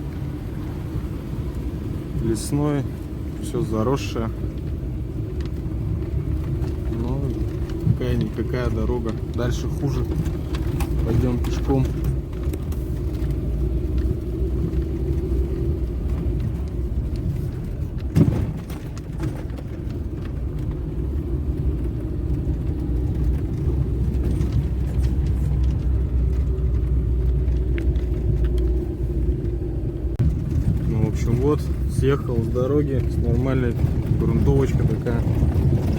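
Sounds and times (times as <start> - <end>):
car engine and tyres rumbling: 0.0 - 35.9
knocks and rattles: 4.5 - 35.9
car thumping over bump: 18.0 - 19.9.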